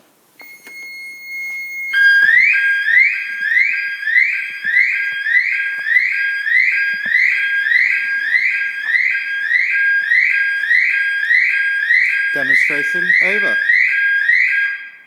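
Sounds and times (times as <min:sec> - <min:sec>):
car alarm siren: 0:00.4 - 0:15.0.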